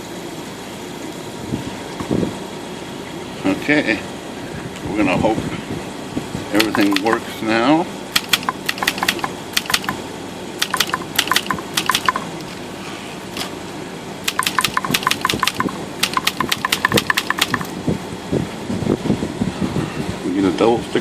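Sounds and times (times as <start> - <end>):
typewriter keys clacking: 6.6 - 7.2, 8.2 - 10.0, 10.6 - 12.2, 14.3 - 17.7.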